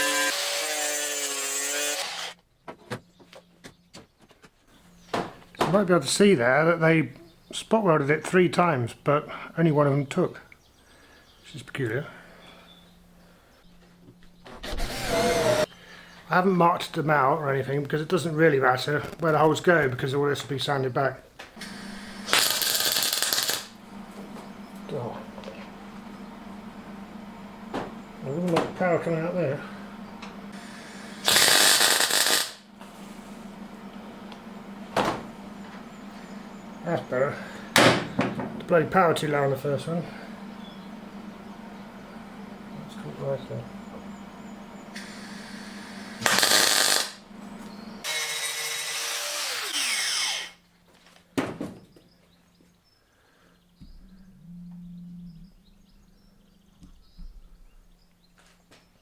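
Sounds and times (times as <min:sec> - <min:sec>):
power tool running: 0:00.0 - 0:02.4, 0:14.6 - 0:15.7, 0:21.6 - 0:50.6
welding arc crackling: 0:21.6 - 0:25.6, 0:30.2 - 0:36.2, 0:44.9 - 0:50.0.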